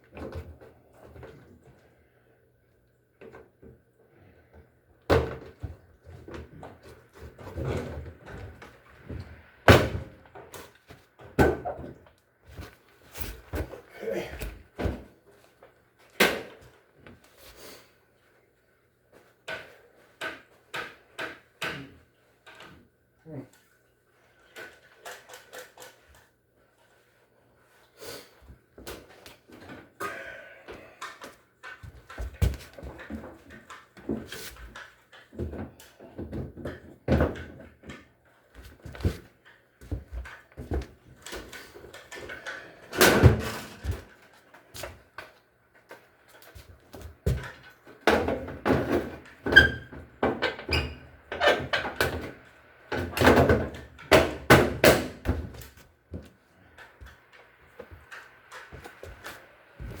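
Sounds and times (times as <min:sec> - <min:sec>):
hard parts clunking and rattling: 0:30.8 - 0:44.4.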